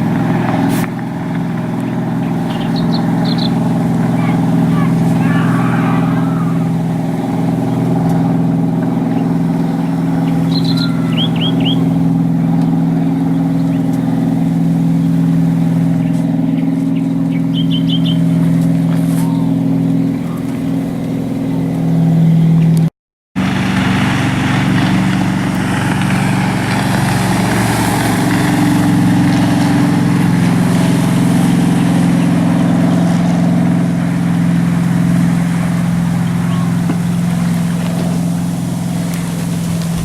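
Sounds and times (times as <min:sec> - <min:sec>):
boat engine running: 0:00.0 - 0:40.0
wake and spray hissing: 0:23.4 - 0:32.2.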